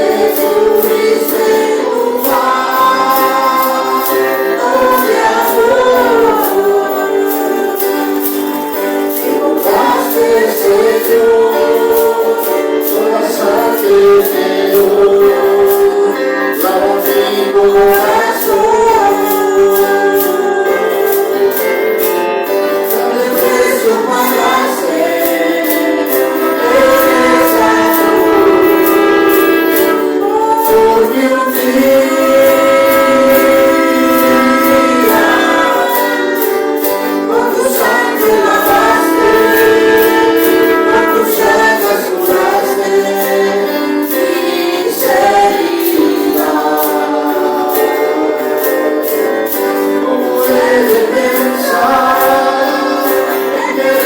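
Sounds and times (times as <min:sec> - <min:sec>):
voices singing praise music: 0:00.0 - 0:54.0
high percussion strikes: 0:22.9 - 0:48.0.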